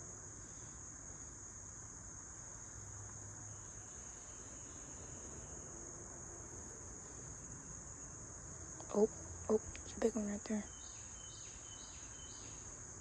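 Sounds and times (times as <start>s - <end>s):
faint outdoor hiss: 0.0s - 13.0s
insects trilling: 0.0s - 13.0s.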